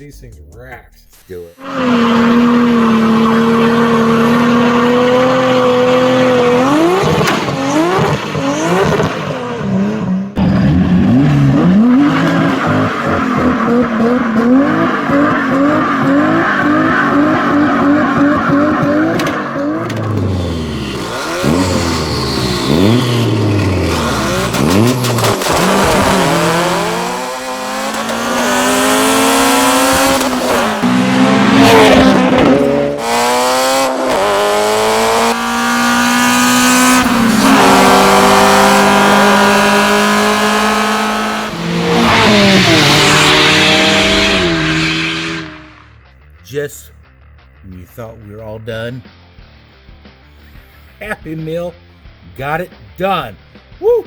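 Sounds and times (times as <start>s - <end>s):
tire squeal: 1.6s - 6.7s, 10.4s - 30.9s, 40.4s - 46.0s
cars sweeping past: 1.6s - 46.0s
race car engines revving: 1.6s - 46.4s.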